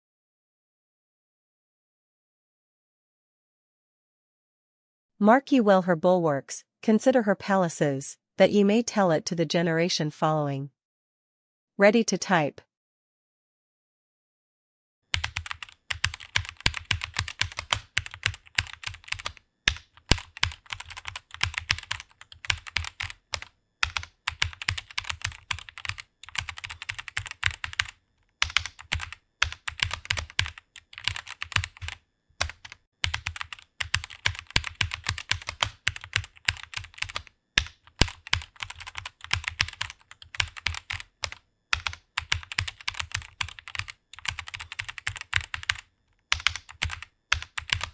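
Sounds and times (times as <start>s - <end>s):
keyboard typing: 15.1s - 47.9s.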